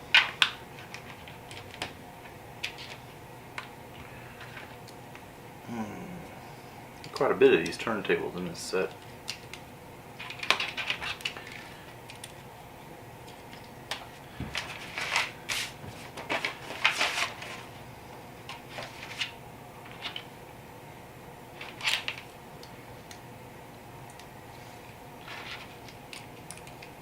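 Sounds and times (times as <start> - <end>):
plastic pieces clicking: 10.2 - 12.4, 25.3 - 27.0.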